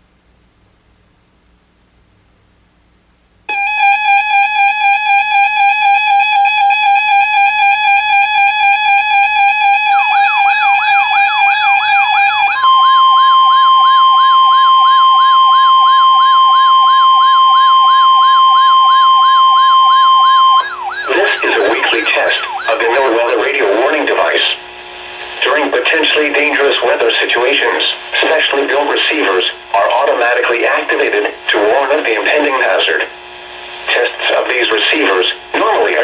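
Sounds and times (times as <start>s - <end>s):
steady alarm tone: 3.5s - 23.5s
up-and-down siren sweep: 3.5s - 23.5s
pulsing buzzy electronic tone: 9.4s - 14.5s, 17.7s - 23.4s.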